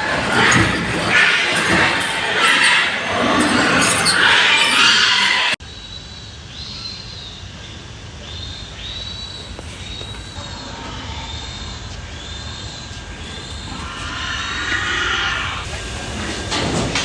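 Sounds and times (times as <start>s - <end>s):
piglets squealing: 0.0s - 5.6s, 9.8s - 15.7s.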